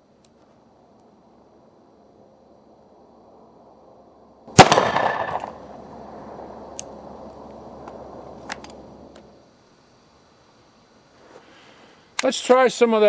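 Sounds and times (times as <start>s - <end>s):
pistol shot: 4.6s - 5.6s.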